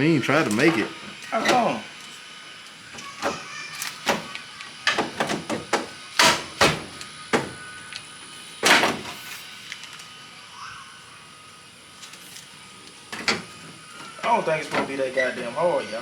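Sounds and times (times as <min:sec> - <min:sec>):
sharp knocks and bangs on metal: 0:04.9 - 0:07.6.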